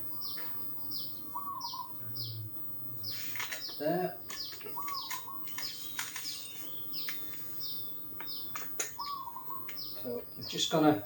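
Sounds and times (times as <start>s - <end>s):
birds chirping: 0.0s - 11.0s
sharp clicks: 3.3s - 7.4s, 8.2s - 9.9s.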